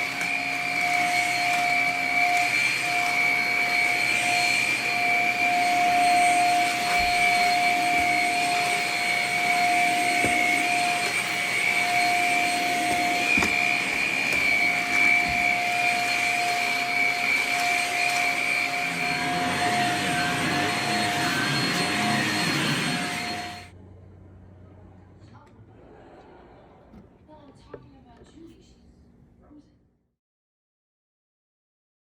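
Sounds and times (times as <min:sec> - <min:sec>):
vacuum cleaner whining: 0:00.0 - 0:23.8.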